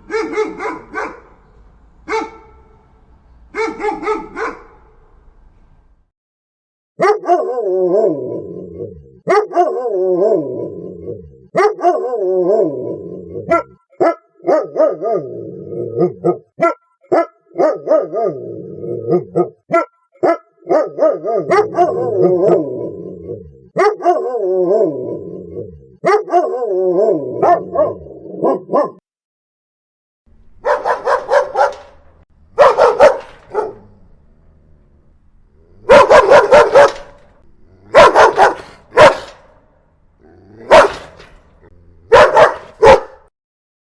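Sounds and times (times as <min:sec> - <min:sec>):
dogs barking and snarling: 0:00.0 - 0:01.3, 0:07.0 - 0:29.0, 0:30.6 - 0:32.0, 0:32.6 - 0:34.1, 0:35.6 - 0:39.5, 0:40.2 - 0:43.3.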